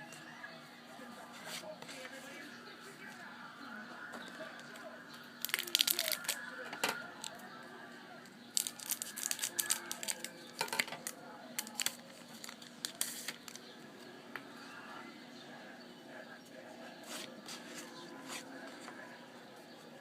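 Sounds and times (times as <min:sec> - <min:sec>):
card wrappers crinkling and tearing: 0:05.4 - 0:07.4, 0:08.5 - 0:13.7.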